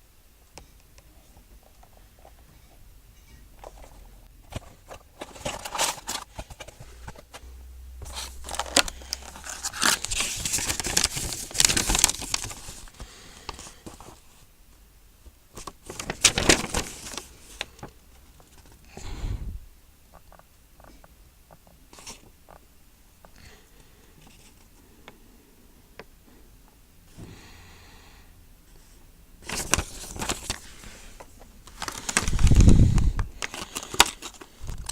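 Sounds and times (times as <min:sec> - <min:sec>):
packaging crinkling and tearing: 0:04.5 - 0:07.3, 0:08.0 - 0:14.2, 0:15.6 - 0:17.9, 0:29.4 - 0:31.0, 0:31.6 - 0:34.9.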